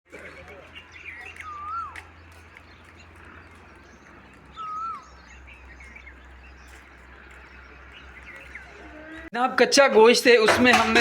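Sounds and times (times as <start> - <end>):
soft bird chirps: 0.1 - 9.3
bird whistling note: 1.3 - 2.0, 4.6 - 5.1.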